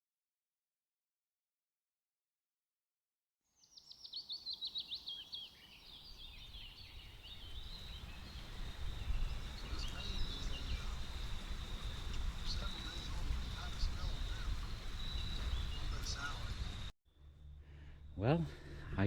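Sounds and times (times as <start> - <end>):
bird trilling: 3.9 - 16.8
low outdoor rumble: 7.4 - 19.0.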